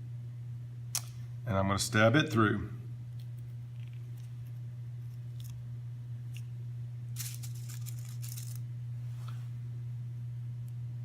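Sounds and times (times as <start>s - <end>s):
low electrical hum: 0.0s - 11.0s
crackly crunching: 7.2s - 8.6s.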